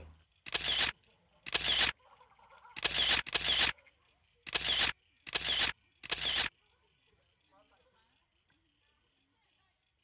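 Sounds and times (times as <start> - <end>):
camera shutter snaps: 0.5 - 2.0, 2.7 - 3.8, 4.5 - 6.5.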